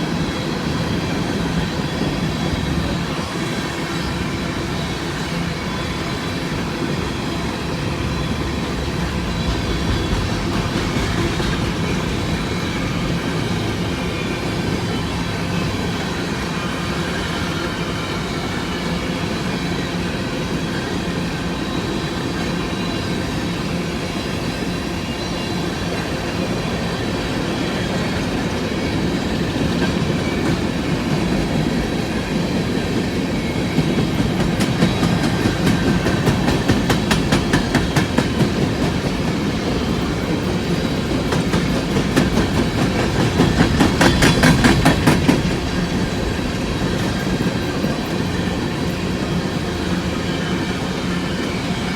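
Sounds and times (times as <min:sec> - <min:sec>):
steel wheels rumbling on rail: 0:00.0 - 0:51.9
wheels clicking over rail joints: 0:33.6 - 0:49.8.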